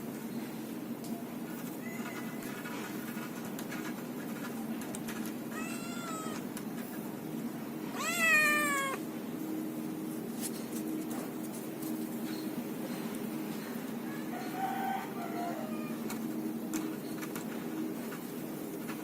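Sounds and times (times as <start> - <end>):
kitten meowing: 5.5 - 6.5, 7.9 - 9.0.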